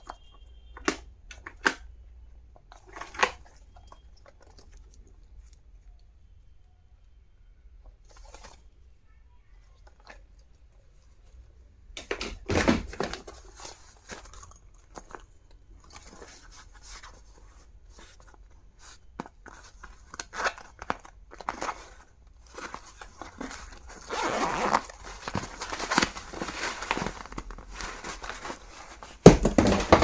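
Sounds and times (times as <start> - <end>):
packaging crinkling and tearing: 19.5 - 30.0.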